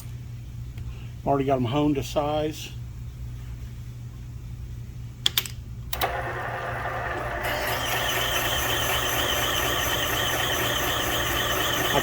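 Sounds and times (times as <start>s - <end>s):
machine spindle running: 6.0s - 12.0s.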